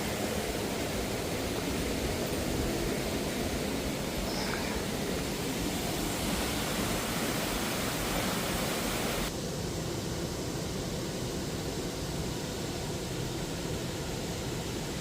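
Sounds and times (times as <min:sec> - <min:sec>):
waterfall rushing: 0:00.0 - 0:09.3.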